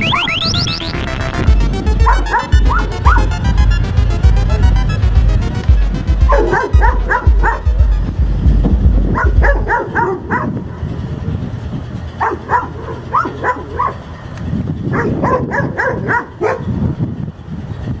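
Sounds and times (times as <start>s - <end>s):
dogs barking: 1.9s - 4.8s, 5.8s - 11.0s, 12.1s - 16.9s.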